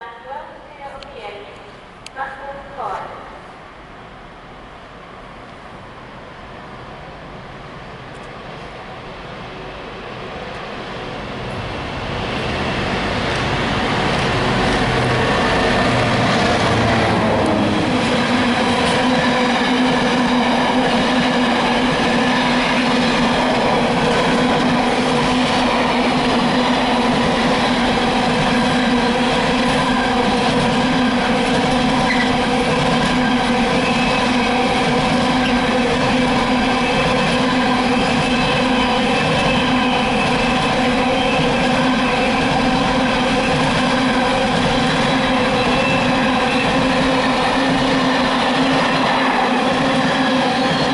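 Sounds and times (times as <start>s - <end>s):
diesel locomotive engine: 0.6s - 50.9s.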